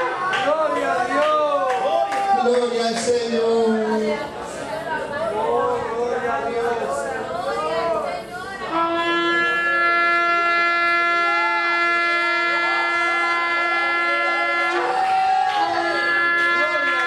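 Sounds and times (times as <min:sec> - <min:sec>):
blown horn note: 0:08.6 - 0:17.0.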